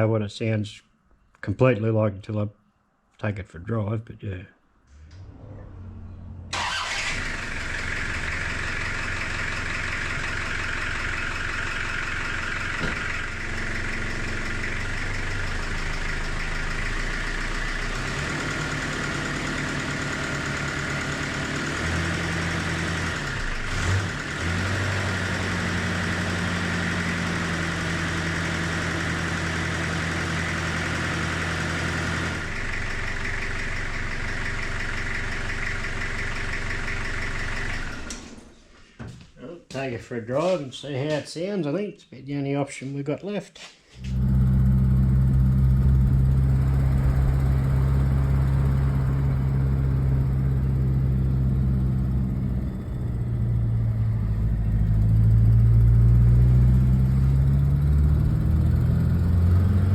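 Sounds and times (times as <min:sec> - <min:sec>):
engine starting and idling: 0:04.9 - 0:38.7, 0:44.0 - 0:56.2.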